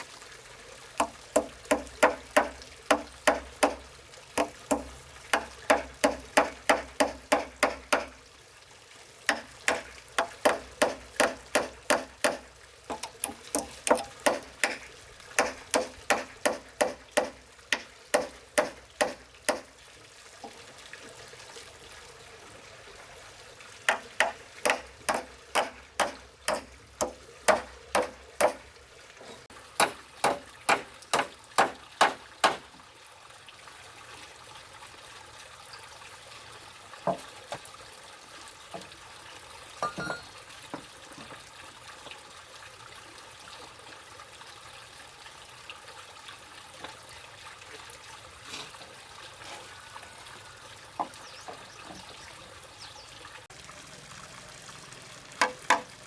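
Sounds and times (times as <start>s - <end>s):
hand tool striking wood: 1.0s - 3.8s, 4.4s - 8.2s, 9.3s - 19.7s, 23.9s - 28.6s, 29.8s - 32.7s, 55.4s - 55.9s.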